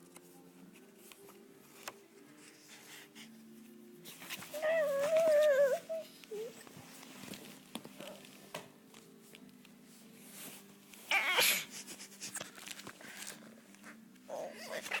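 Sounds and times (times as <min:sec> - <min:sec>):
dog whining: 0:04.4 - 0:06.7.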